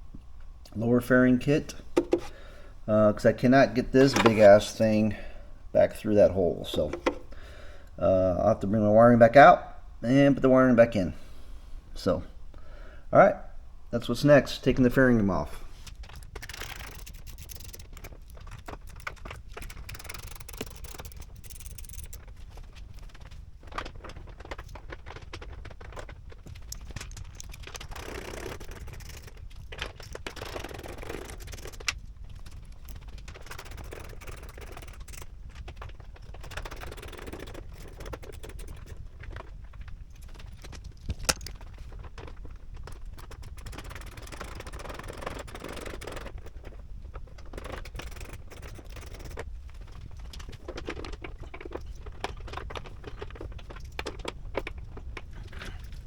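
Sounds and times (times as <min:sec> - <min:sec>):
plastic parts scraping: 0:01.4 - 0:08.0, 0:15.8 - 0:56.0
hand tools clicking and rattling: 0:01.8 - 0:02.5, 0:03.7 - 0:04.8, 0:06.6 - 0:07.4, 0:16.1 - 0:22.8, 0:23.8 - 0:56.0.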